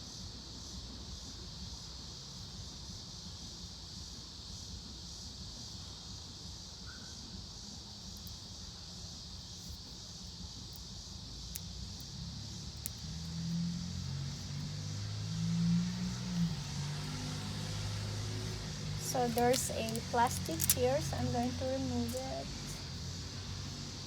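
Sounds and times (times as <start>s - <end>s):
crickets chirring: 0.0s - 24.0s
car engine approaching: 12.2s - 24.0s
faint clicks: 19.2s - 21.2s.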